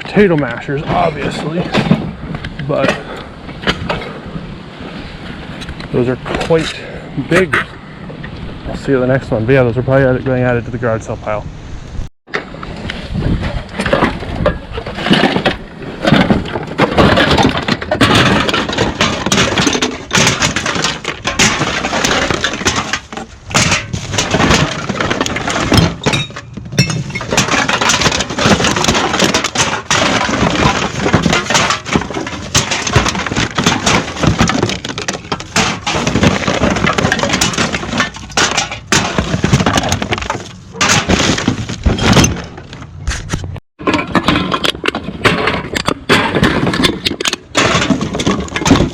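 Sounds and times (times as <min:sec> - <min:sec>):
glass containers clattering: 0:13.8 - 0:42.6, 0:43.8 - 0:48.9.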